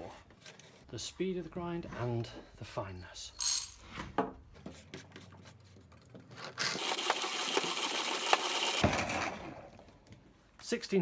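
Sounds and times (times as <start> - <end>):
hand coffee grinder grinding: 6.4 - 9.5
coffee beans cracking: 6.6 - 8.8.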